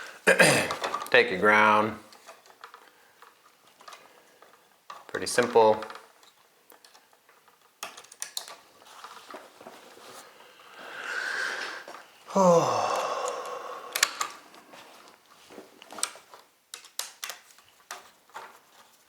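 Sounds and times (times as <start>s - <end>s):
small sharp clicks of handling tools: 2.1s - 8.6s, 13.2s - 14.4s, 15.8s - 18.1s
breathy exhale: 10.6s - 14.2s
person groaning: 12.3s - 14.0s.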